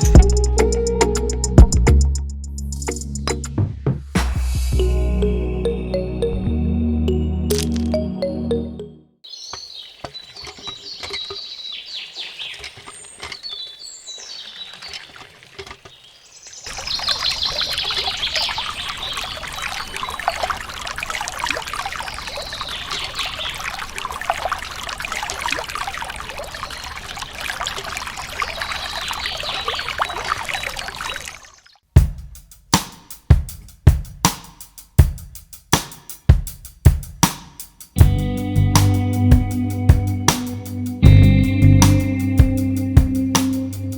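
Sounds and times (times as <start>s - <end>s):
birds chirping: 7.1s - 31.8s
water pouring and splashing: 9.5s - 31.9s.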